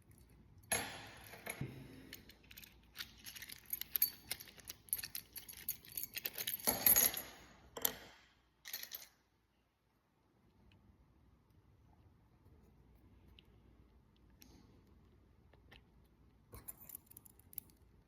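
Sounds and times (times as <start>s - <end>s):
metal keys clicking and clinking: 0.0s - 8.0s, 8.6s - 9.2s, 16.6s - 17.9s.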